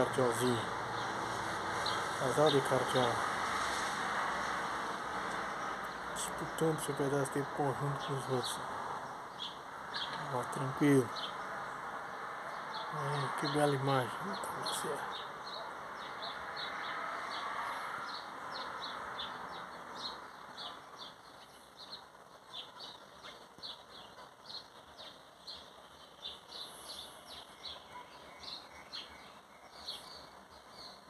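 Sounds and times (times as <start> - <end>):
broad rushing noise: 0.0 - 20.3
small birds chirping: 0.0 - 31.0.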